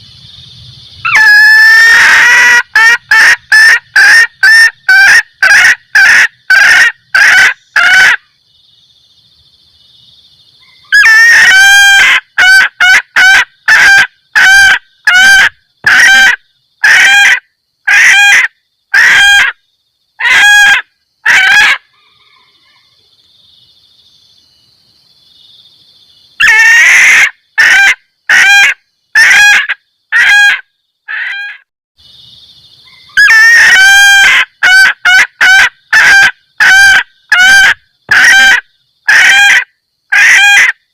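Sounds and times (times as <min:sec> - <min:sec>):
hen cackling: 0:01.0 - 0:08.2, 0:10.6 - 0:19.6, 0:20.2 - 0:23.0, 0:26.4 - 0:31.7, 0:32.8 - 0:40.8.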